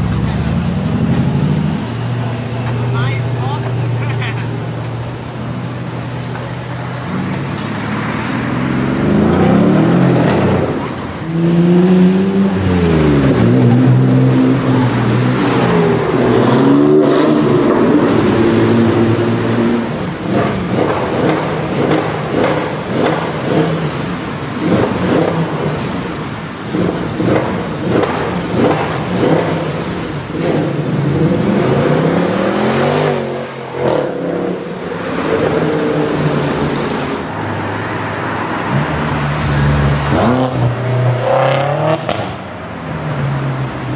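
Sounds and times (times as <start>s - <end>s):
car engine accelerating hard: 8.5s - 37.9s.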